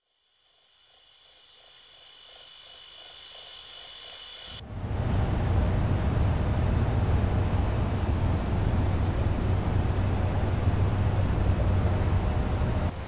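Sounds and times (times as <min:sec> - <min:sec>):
crickets chirping: 0:00.0 - 0:04.6, 0:05.6 - 0:12.9
loud low rumbling noise: 0:04.6 - 0:13.0.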